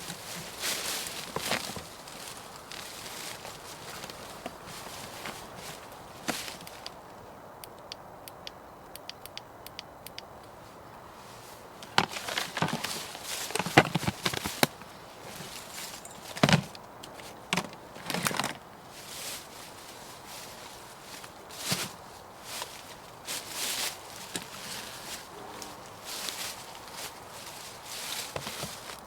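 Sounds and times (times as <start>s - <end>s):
dry wood cracking and snapping: 0.0s - 7.0s, 11.8s - 19.4s
faint light ticks: 7.6s - 10.6s.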